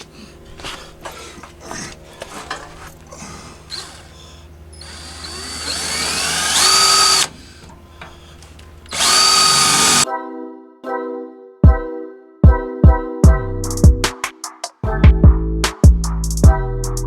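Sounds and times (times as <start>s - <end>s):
power drill whining: 3.2s - 7.5s, 8.9s - 10.0s.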